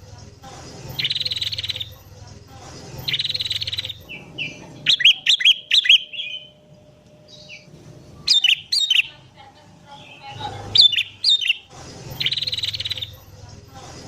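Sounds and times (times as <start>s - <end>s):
bird singing: 0.0s - 13.4s
rapid buzzy bird trill: 0.8s - 2.1s, 2.9s - 13.3s
sharp whistled bird notes: 3.0s - 6.6s, 7.3s - 9.2s, 10.0s - 13.1s.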